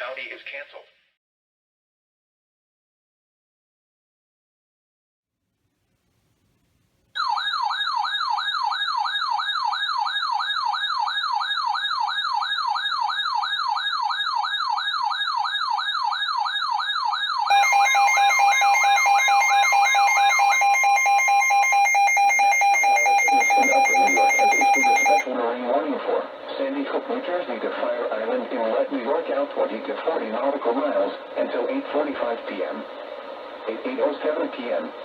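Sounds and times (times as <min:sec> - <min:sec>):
steady alert attention tone: 0:17.5 - 0:25.2
warbling siren-like tone: 0:17.5 - 0:25.2.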